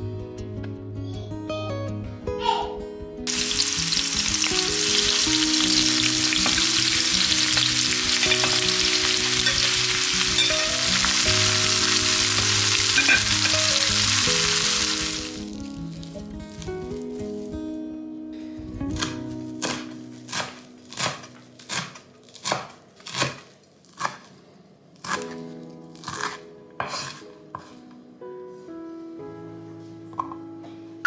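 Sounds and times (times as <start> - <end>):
soft background music: 0.0 - 23.2, 24.9 - 31.0
food sizzling in pan: 3.3 - 17.0.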